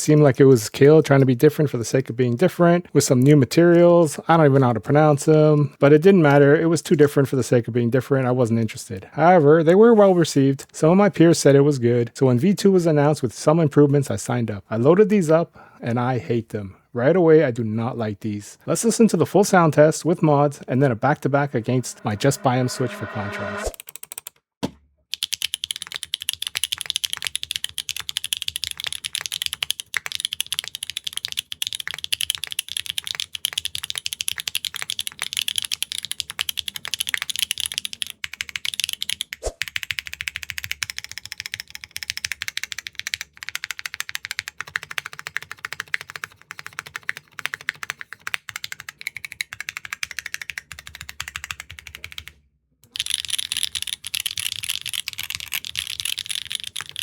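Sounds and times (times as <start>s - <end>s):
fast typing on mechanical keyboard: 25.2s - 57.0s.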